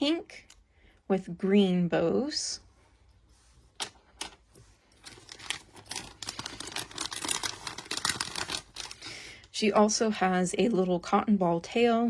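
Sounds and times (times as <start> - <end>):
plastic packaging rustling: 3.5 - 9.4.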